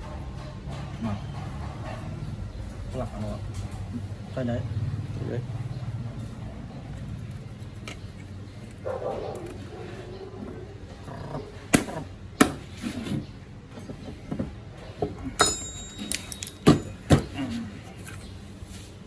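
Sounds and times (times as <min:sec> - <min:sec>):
hand tools knocking and clanking: 0:13.8 - 0:18.3.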